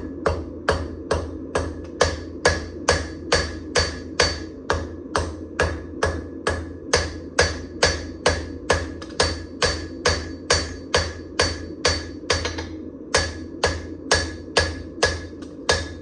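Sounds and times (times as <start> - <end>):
hammer striking steel on anvil: 0.0 - 16.0
steady low hum: 0.0 - 16.0.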